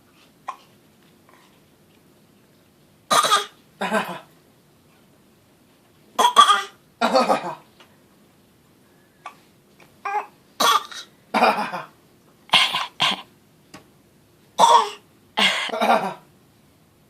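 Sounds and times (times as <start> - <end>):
person fake coughing: 6.2 - 7.7, 12.5 - 13.3, 14.6 - 16.2.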